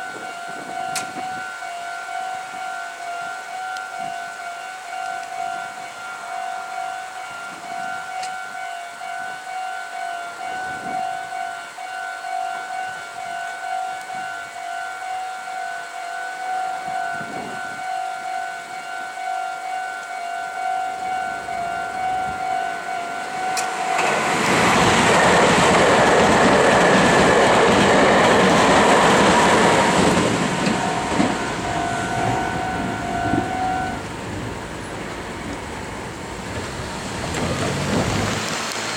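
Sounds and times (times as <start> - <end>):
level-crossing warning bell: 0.0 - 37.4
train wheels clattering on rails: 21.0 - 38.9.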